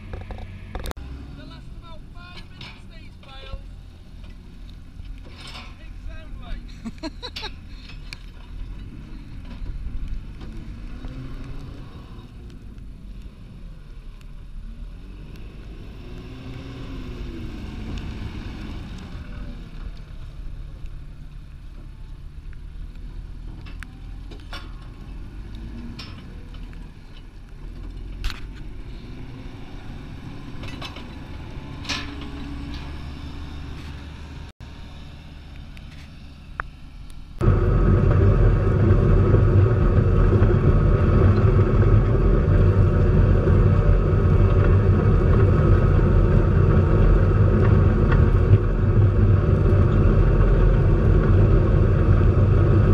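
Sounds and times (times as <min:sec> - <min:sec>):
tractor engine running: 0:29.4 - 0:52.9.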